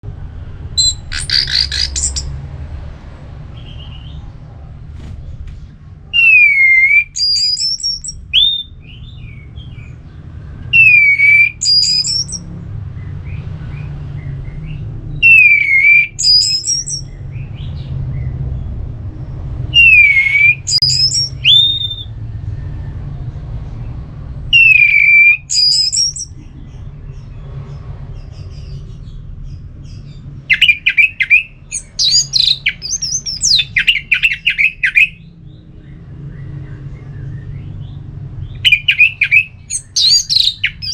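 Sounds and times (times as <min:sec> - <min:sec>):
steady low hum: 0:00.0 - 0:15.2
bird twittering: 0:00.8 - 0:02.3, 0:06.2 - 0:09.8, 0:10.7 - 0:12.4, 0:15.2 - 0:17.1, 0:19.8 - 0:22.1, 0:24.5 - 0:26.4, 0:30.5 - 0:35.3, 0:38.5 - 0:40.9
thrush singing whistled phrases: 0:00.8 - 0:02.3, 0:06.2 - 0:08.8, 0:10.7 - 0:12.4, 0:15.2 - 0:17.1, 0:19.8 - 0:22.1, 0:24.5 - 0:26.3, 0:30.5 - 0:35.2, 0:38.6 - 0:40.9.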